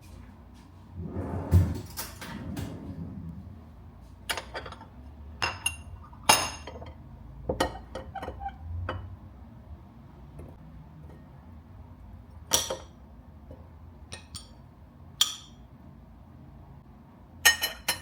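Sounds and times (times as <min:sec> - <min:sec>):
dishes clinking: 0:04.3 - 0:09.1, 0:17.4 - 0:18.0.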